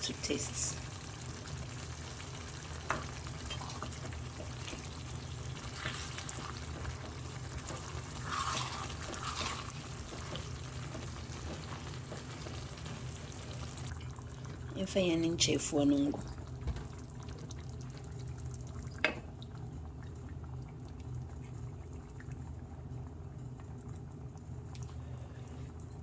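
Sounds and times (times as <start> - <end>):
stew sizzling in a pot: 0.0 - 18.3.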